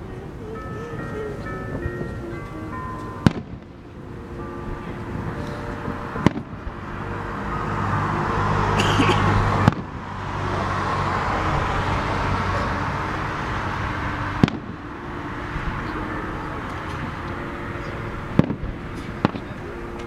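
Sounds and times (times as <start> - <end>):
background rumble: 0.0 - 20.0
fireworks bangs: 5.2 - 6.8, 9.2 - 9.9, 14.2 - 14.8, 18.4 - 19.6.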